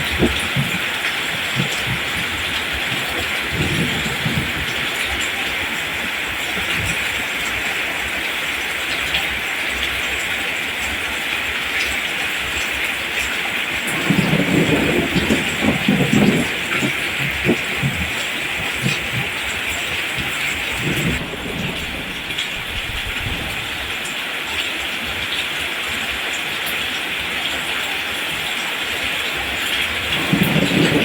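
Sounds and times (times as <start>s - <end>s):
rain falling on plants: 0.0s - 31.0s
low rumbling: 13.9s - 23.9s.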